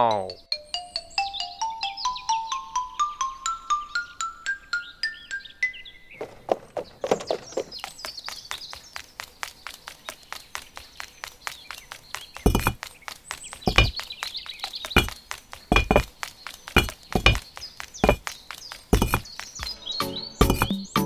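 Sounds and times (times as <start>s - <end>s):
bird chirps: 7.0s - 21.0s
heavier knocks: 12.4s - 14.1s, 14.8s - 19.7s, 20.4s - 20.7s.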